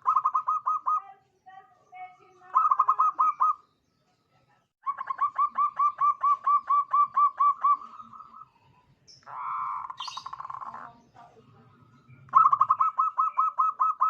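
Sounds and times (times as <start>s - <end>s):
dove cooing: 0.0s - 1.1s, 2.4s - 3.6s, 4.8s - 11.1s, 12.1s - 14.0s.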